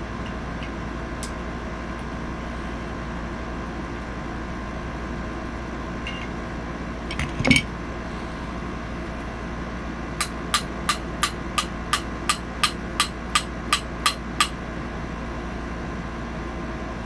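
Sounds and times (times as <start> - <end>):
steady hum: 0.0 - 16.5
small hammer tapping metal: 10.2 - 14.6.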